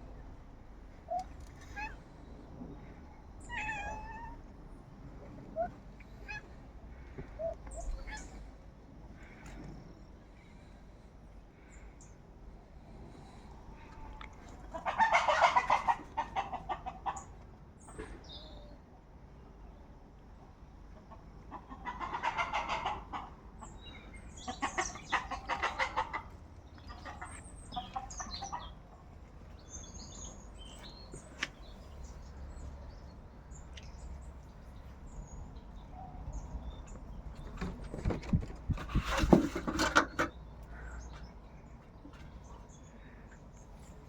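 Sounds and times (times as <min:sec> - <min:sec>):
chickens clucking: 0:13.9 - 0:18.2, 0:20.9 - 0:32.2.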